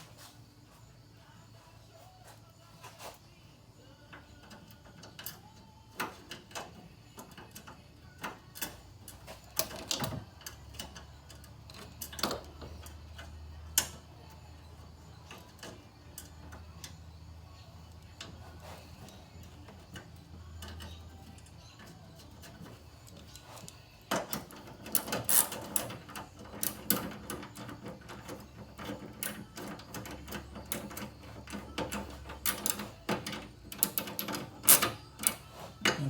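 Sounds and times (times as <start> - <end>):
metal brackets and tools clicking: 4.1 - 36.0.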